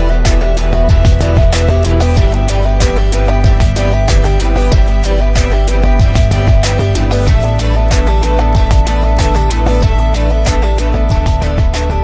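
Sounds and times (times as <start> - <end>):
steady drum beat: 0.0 - 12.0.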